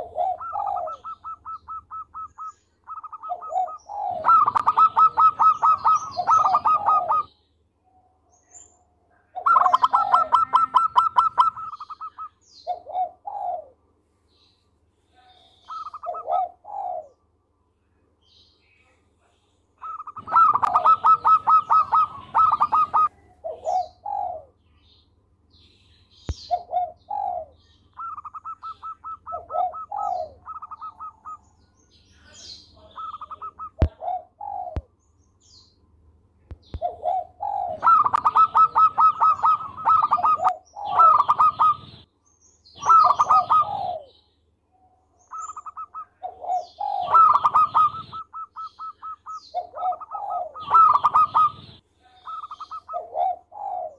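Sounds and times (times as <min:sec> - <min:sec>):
dove cooing: 0:00.0 - 0:07.3, 0:09.3 - 0:13.8, 0:15.2 - 0:17.2, 0:19.8 - 0:24.6, 0:26.4 - 0:31.5, 0:32.3 - 0:34.9, 0:36.6 - 0:42.1, 0:42.8 - 0:44.2, 0:45.2 - 0:53.9.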